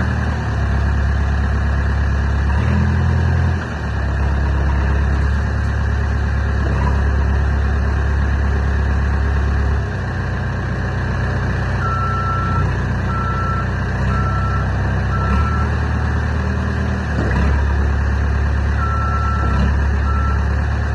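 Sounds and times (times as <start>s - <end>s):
diesel engine running: 0.0s - 20.9s
reversing alarm beeping: 11.8s - 16.0s, 18.7s - 20.5s.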